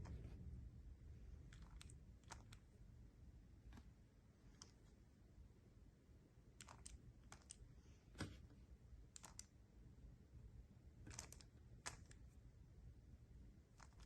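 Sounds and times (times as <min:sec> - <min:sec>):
puzzle cube plastic clicks: 0:06.6 - 0:07.6, 0:09.2 - 0:09.5, 0:11.1 - 0:12.2, 0:13.8 - 0:14.0.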